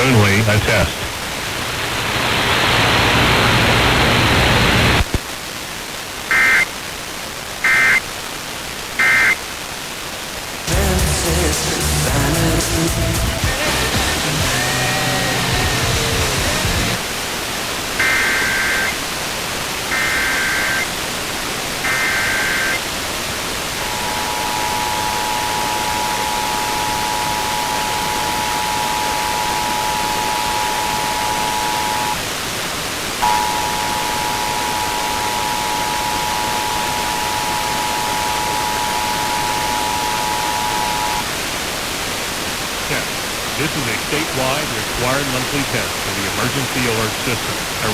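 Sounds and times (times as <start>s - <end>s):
radio static hiss: 0.0s - 47.9s
warbling data bursts: 23.7s - 32.2s, 33.2s - 41.3s
two-tone attention signal: 23.8s - 32.2s, 33.2s - 41.3s.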